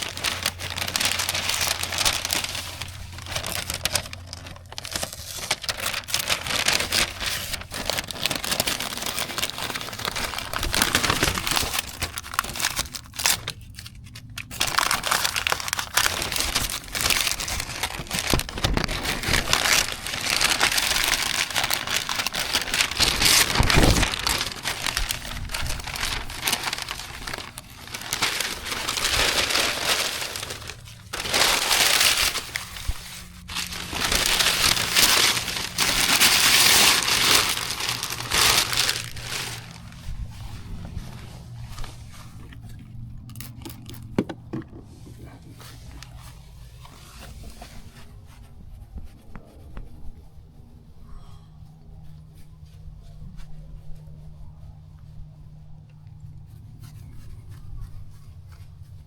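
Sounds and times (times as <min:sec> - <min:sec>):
sheet material crumpling: 0:00.0 - 0:44.2.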